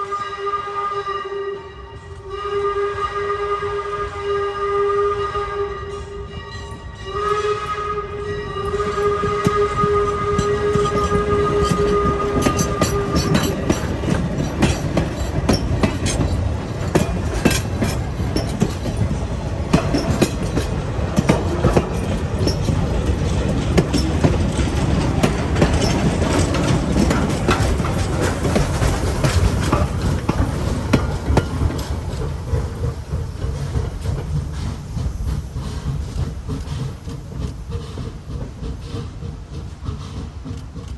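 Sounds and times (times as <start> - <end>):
steam train whistle: 0.0 - 13.5
wheels clicking over rail joints: 6.8 - 40.9.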